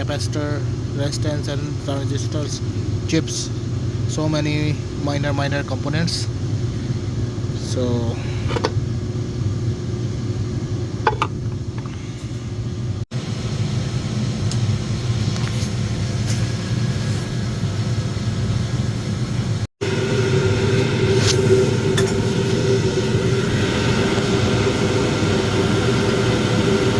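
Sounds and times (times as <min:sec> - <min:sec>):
low drone of boiler equipment: 0:00.0 - 0:26.9
higher hum: 0:18.6 - 0:26.9.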